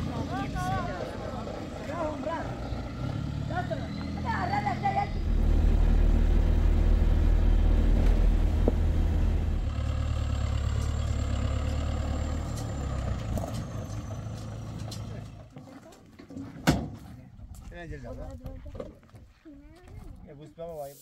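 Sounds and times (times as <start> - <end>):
heavy vehicle engine rumbling: 0.0 - 15.6.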